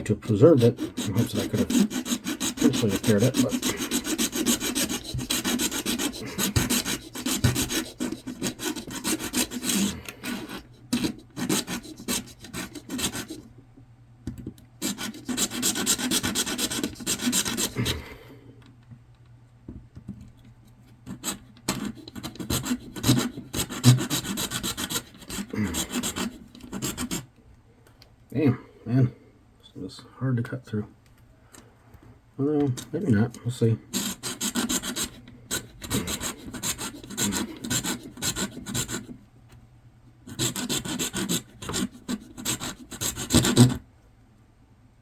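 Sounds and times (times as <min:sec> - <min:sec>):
hacksaw cutting hard plastic: 0:00.3 - 0:13.4, 0:14.8 - 0:18.0, 0:21.1 - 0:27.2, 0:33.9 - 0:39.1, 0:40.3 - 0:43.8.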